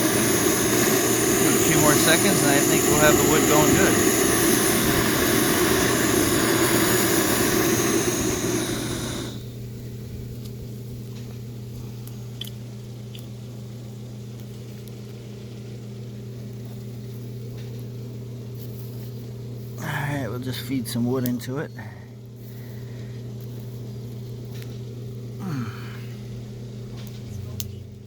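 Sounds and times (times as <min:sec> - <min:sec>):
torch flame rushing: 0:00.0 - 0:09.8
steady low hum: 0:00.0 - 0:28.0.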